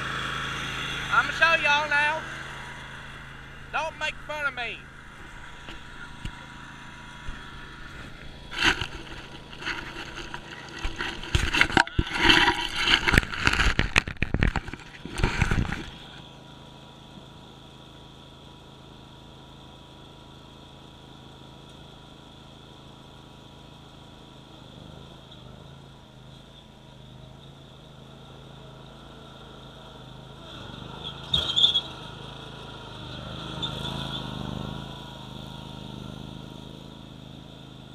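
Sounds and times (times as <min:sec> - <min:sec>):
rough scraping and rushing: 0:00.0 - 0:16.3
mower engine running: 0:00.0 - 0:37.9.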